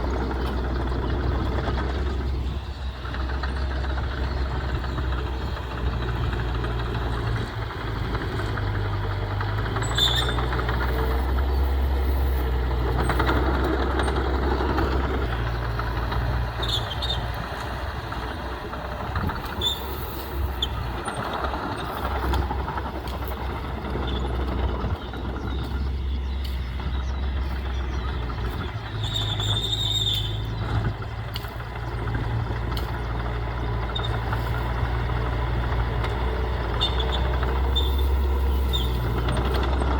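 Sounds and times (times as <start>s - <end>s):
heavy diesel engine running: 0.0s - 39.9s
short high squeaks: 9.8s - 10.6s, 16.6s - 17.3s, 19.5s - 20.8s, 29.0s - 30.6s, 36.7s - 39.4s.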